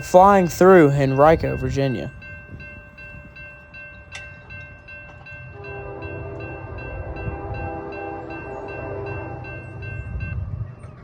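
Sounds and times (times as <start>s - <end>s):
freight train rumbling: 0.0s - 3.5s, 5.4s - 11.0s
warning bell ringing: 0.0s - 5.8s
locomotive air horn: 5.6s - 9.8s.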